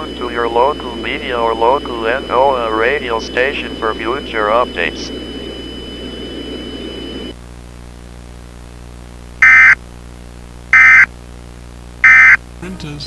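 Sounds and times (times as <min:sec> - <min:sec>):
steady hiss with high tone: 0:00.0 - 0:07.4
electronic data screeches: 0:09.4 - 0:09.8, 0:10.8 - 0:11.1, 0:12.0 - 0:12.4.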